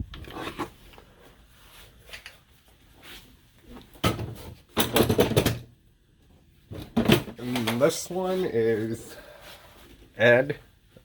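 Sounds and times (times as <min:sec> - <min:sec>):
tools clunking and rattling: 0:04.0 - 0:05.7, 0:06.7 - 0:08.0.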